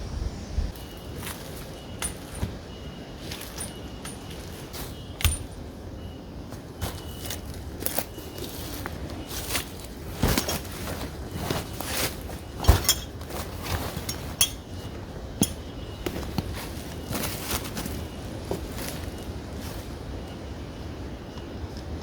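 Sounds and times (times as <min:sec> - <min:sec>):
clinks and knocks of gear: 0:01.7 - 0:05.6, 0:10.2 - 0:18.1.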